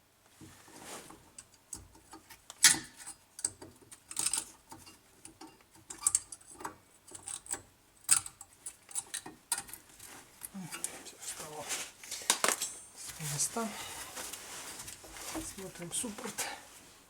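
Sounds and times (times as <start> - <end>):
metal parts clicking and scraping: 1.4 - 10.9.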